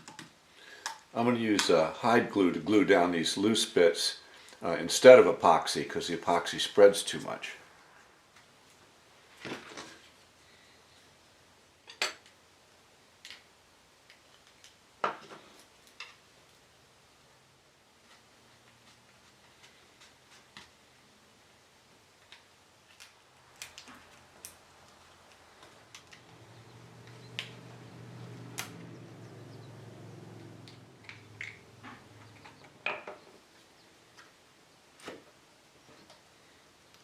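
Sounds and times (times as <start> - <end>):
low hum: 25.6 - 32.8
small objects clicking and tapping: 30.6 - 33.2.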